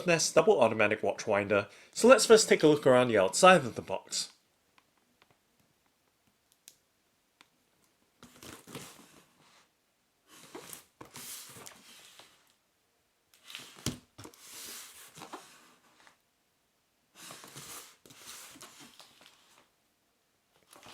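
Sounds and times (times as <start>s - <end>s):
cardboard box rustling and scraping: 10.3s - 12.4s, 13.5s - 16.1s, 17.2s - 19.7s.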